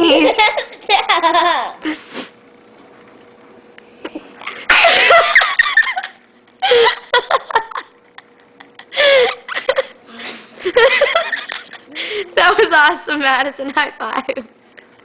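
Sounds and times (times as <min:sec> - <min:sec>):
child laughing and giggling: 0:00.0 - 0:01.8.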